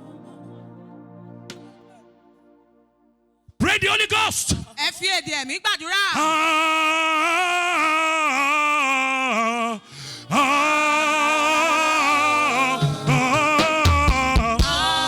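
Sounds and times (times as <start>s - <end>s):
drum hits: 12.8s - 15.0s.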